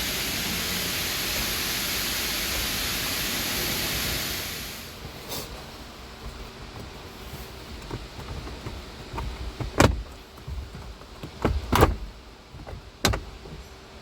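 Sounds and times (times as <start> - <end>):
tools knocking on car panels: 6.2 - 13.7.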